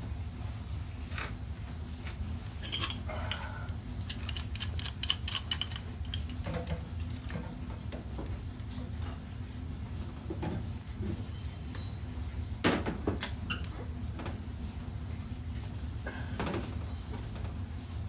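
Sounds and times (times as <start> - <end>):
metal tools clinking on pipes: 2.6 - 7.8.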